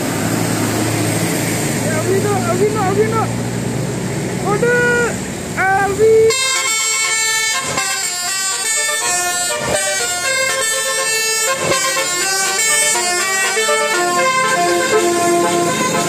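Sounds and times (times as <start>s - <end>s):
melody of held notes: 6.3s - 16.0s.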